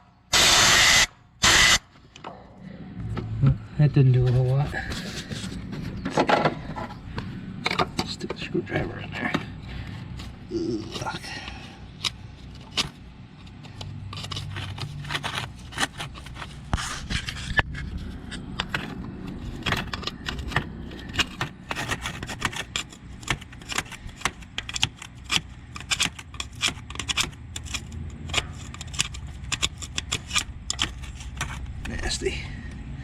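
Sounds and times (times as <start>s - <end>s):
screwdriver scraping metal: 0.3s - 1.8s, 11.9s - 17.6s, 18.4s - 32.1s.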